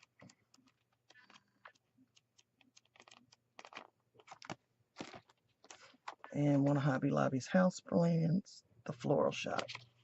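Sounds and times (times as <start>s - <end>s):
paper pages flipping: 0.0s - 6.9s, 9.4s - 10.0s.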